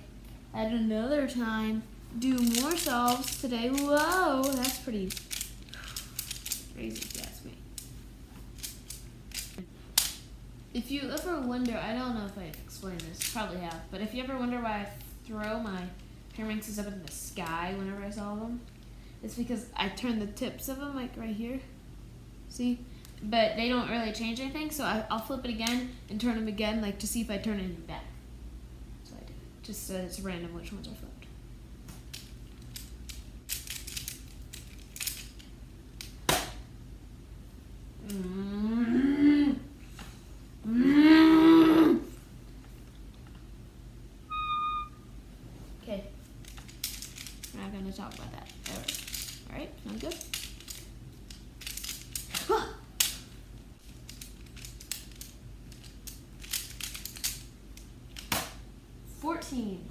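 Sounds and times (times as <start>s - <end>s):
plastic puzzle clicking: 2.2s - 7.9s, 8.6s - 10.2s, 32.1s - 35.4s, 46.4s - 49.4s, 50.0s - 52.4s, 53.9s - 58.4s
brief vocal sound: 40.6s - 42.1s.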